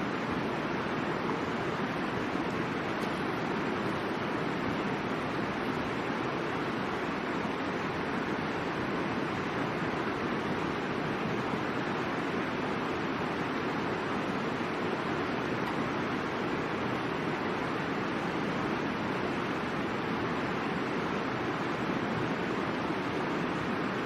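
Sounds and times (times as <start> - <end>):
rushing river water: 0.0 - 24.0.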